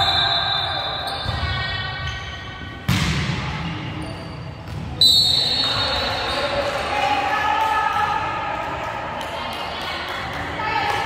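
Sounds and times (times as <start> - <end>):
volleyball game in indoor hall: 0.0 - 11.0
loud ball hit: 2.9 - 3.6.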